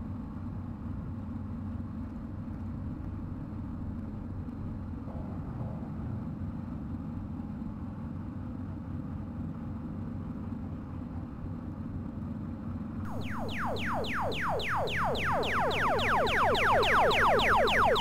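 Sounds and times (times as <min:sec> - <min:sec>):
falling electronic sweeps: 0:13.1 - 0:18.0.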